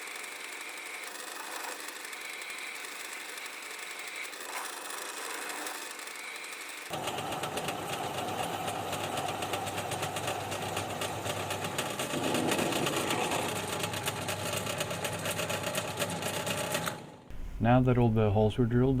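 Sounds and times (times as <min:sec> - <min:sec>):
power drill boring into steel: 0:00.0 - 0:06.9.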